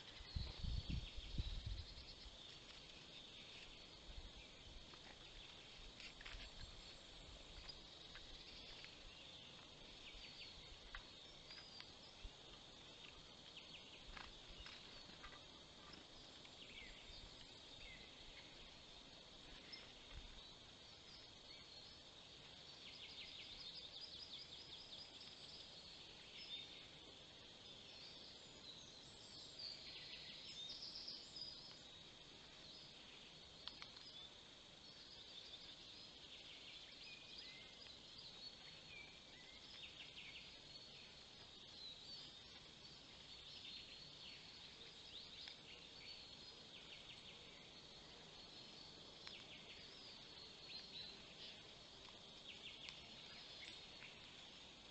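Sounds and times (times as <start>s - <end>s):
distant birdsong hum: 0.0s - 54.9s
songbird chirps and calls: 0.0s - 54.9s.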